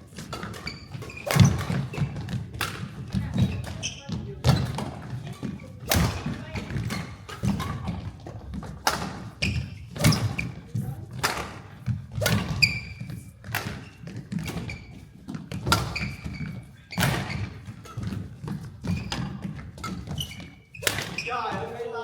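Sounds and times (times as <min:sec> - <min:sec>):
shoes squeaking on court: 0:00.0 - 0:22.0
racket hitting shuttlecock: 0:00.2 - 0:03.8, 0:05.8 - 0:08.0, 0:08.8 - 0:14.7, 0:15.6 - 0:16.3, 0:20.8 - 0:21.6.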